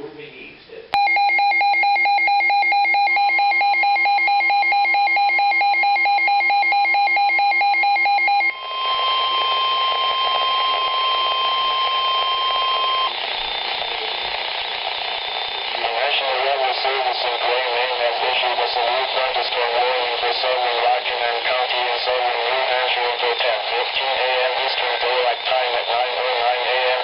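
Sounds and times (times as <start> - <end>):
pulsing electronic data beeps: 1.0 - 17.4
steady warning alarm tone: 1.0 - 27.0.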